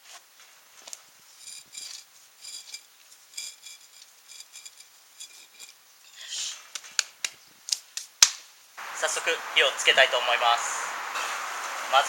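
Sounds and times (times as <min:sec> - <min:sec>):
metal grill clinking and scraping: 0:01.3 - 0:06.3.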